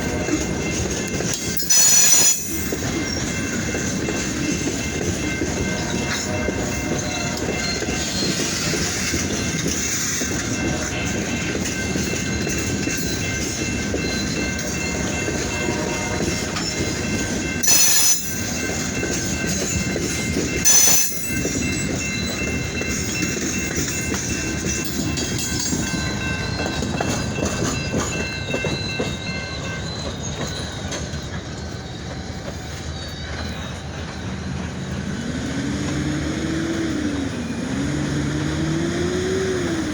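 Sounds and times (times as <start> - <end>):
train cars clicking over rail joints: 0.0 - 39.9.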